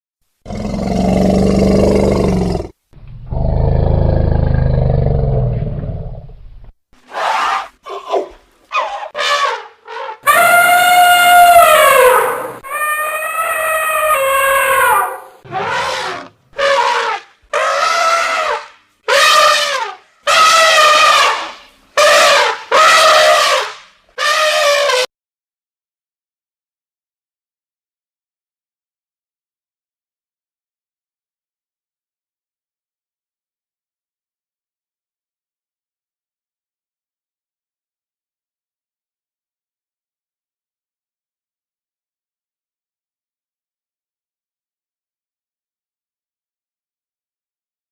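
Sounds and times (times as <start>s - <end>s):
elephant roaring: 0.5s - 6.3s, 10.3s - 18.6s
elephant trumpeting: 7.1s - 25.1s.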